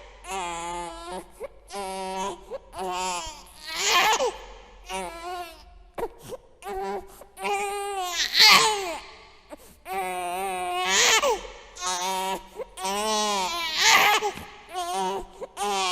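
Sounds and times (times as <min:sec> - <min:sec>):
infant crying: 0:00.0 - 0:05.7, 0:06.6 - 0:09.1, 0:09.9 - 0:15.9
infant gasping breaths: 0:09.5 - 0:09.9.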